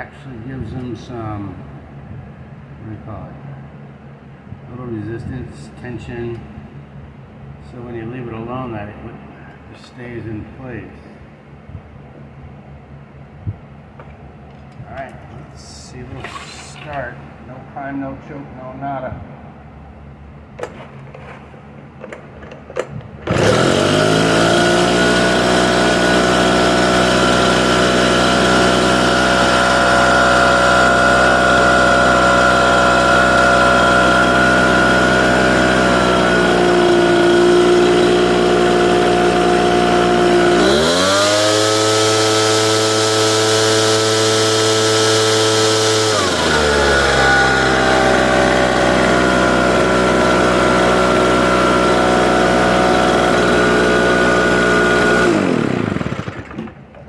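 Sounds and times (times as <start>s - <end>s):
blower engine idling and revving: 23.2s - 56.9s.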